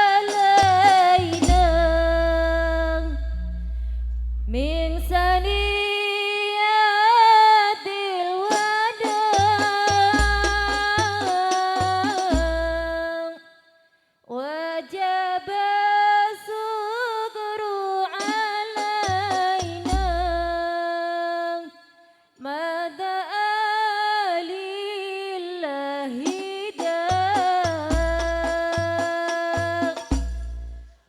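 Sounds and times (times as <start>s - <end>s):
low drum beats: 0.3s - 5.8s, 8.5s - 13.0s, 18.2s - 20.6s, 26.3s - 30.9s.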